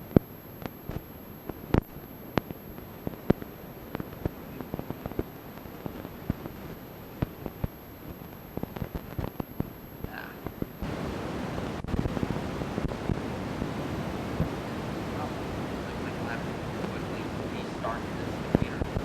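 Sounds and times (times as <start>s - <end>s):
faint steady hiss: 0.0s - 19.0s
sharp clicks and crackles: 0.1s - 10.8s.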